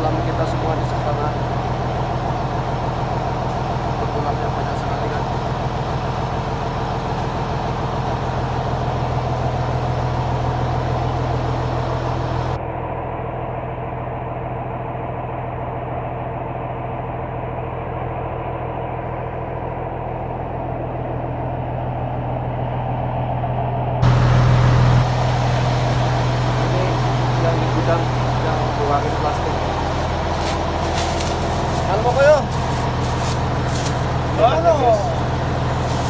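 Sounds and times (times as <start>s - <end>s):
motor humming: 24.0s - 36.0s.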